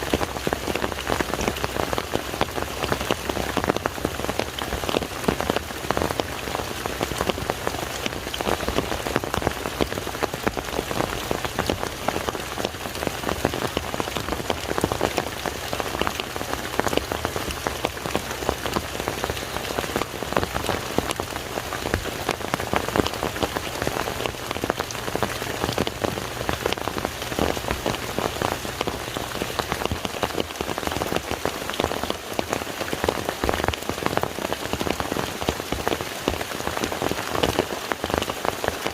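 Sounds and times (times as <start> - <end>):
rain falling on lake: 0.0 - 38.9.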